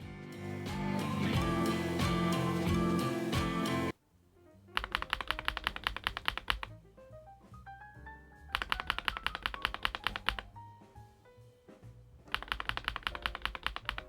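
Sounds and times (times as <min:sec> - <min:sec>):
soft background music: 0:00.0 - 0:14.0
fast mechanical keyboard typing: 0:04.8 - 0:06.7, 0:08.6 - 0:10.5, 0:12.3 - 0:14.0.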